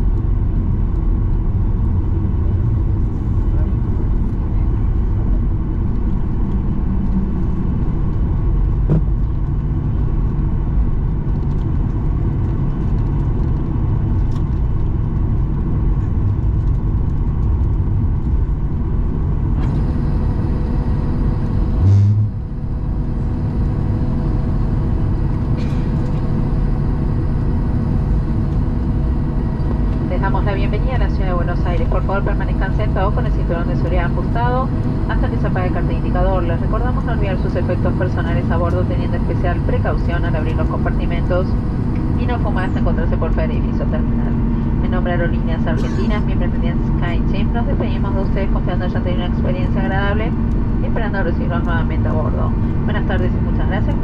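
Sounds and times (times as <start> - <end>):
aircraft cabin engine rumble: 0.0 - 54.0
faint high whine: 19.6 - 25.4.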